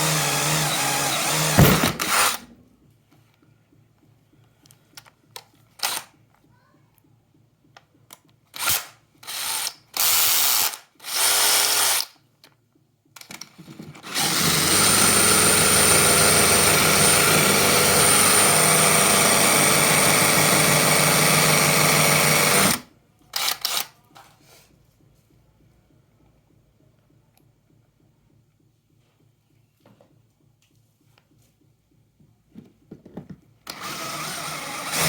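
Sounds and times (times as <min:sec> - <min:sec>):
cordless drill motor whirring: 0:00.0 - 0:02.4, 0:14.0 - 0:22.8, 0:33.7 - 0:35.0.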